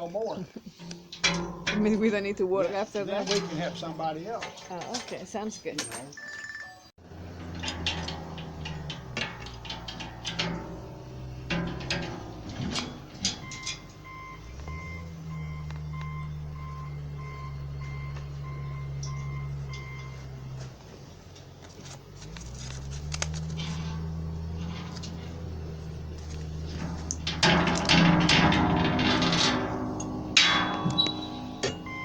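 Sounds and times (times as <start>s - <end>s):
metal clinks: 0.7s - 21.3s, 22.2s - 32.0s
vehicle engine revving: 7.0s - 32.0s
reversing alarm beeping: 13.3s - 20.6s, 30.7s - 32.0s.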